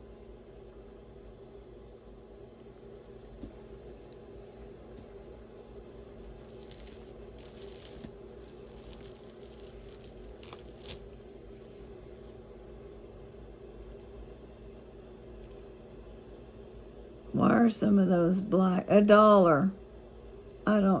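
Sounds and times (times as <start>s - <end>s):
beaded necklace rattling: 5.8s - 11.0s.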